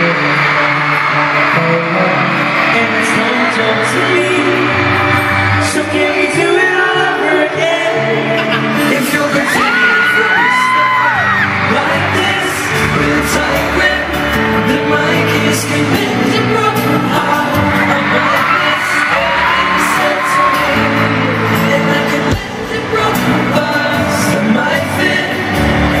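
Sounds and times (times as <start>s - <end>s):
boy band singing pop ballad: 2.2s - 26.0s
fans screaming high-pitched: 9.0s - 15.6s, 16.4s - 22.6s.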